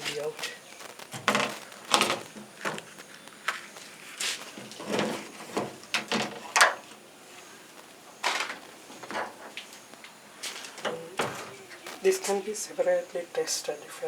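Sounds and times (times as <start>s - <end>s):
plastic knocks and scrapes: 1.0s - 3.0s, 4.3s - 6.9s.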